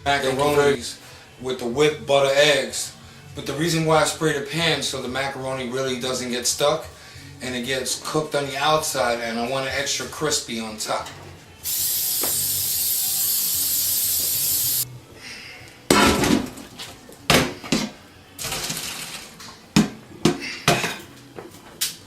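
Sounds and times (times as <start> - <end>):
aerosol spray hissing: 11.6 - 14.8
pots and pans clattering: 15.9 - 16.7, 17.3 - 21.1.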